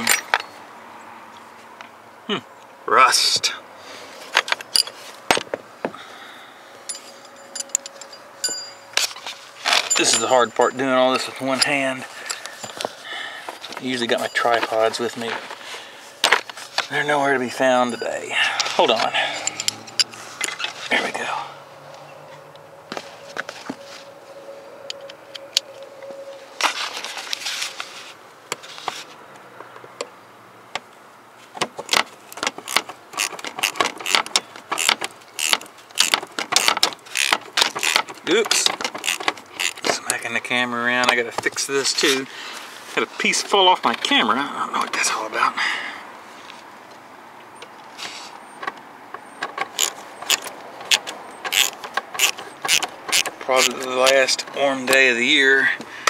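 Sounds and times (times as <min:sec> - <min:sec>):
metal tools clinking: 0:00.0 - 0:00.6, 0:04.4 - 0:05.4, 0:06.8 - 0:15.6, 0:16.2 - 0:21.2
hand tools clicking on metal: 0:18.6 - 0:20.6, 0:31.8 - 0:40.2, 0:49.4 - 0:55.1
socket wrench ratchet clicks: 0:34.8 - 0:38.0, 0:49.8 - 0:54.2.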